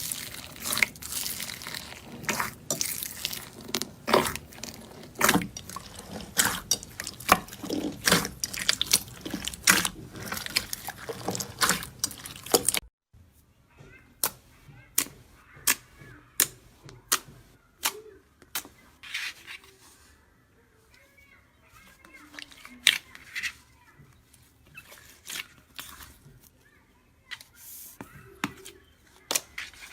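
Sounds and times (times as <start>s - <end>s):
slime squishing and crackling: 0.0s - 12.9s.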